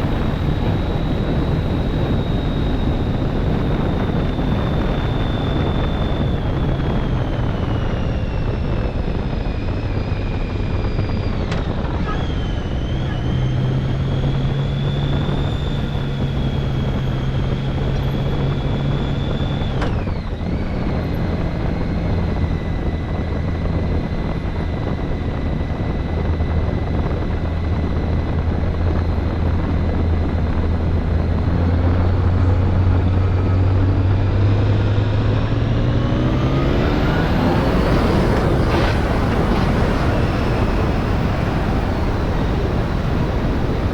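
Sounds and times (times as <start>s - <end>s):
motorcycle engine running: 0.0s - 43.9s
wind rushing: 22.2s - 43.9s.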